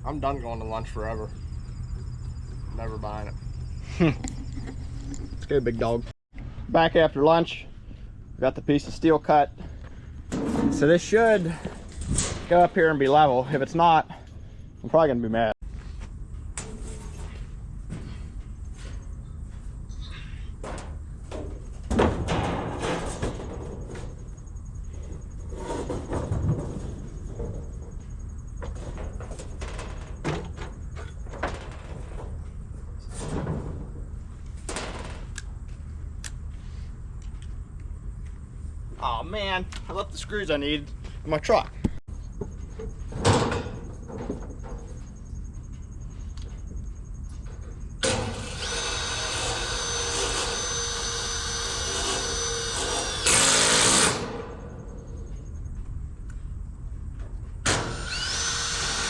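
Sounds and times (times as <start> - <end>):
steady low hum: 0.0 - 59.0
knocks and rattles of building materials: 9.3 - 14.3, 15.8 - 19.7, 20.5 - 35.9, 41.8 - 59.0
power drill driving screws into wood: 48.0 - 54.4, 57.7 - 59.0.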